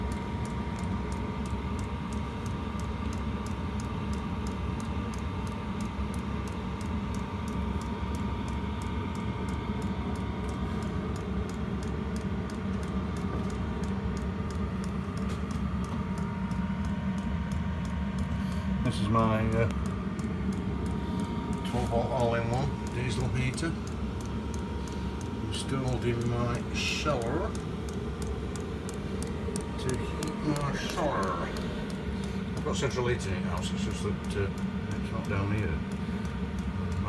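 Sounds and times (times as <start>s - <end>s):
fuel pump ticking: 0.0s - 37.0s
heater blower rushing: 20.6s - 37.0s.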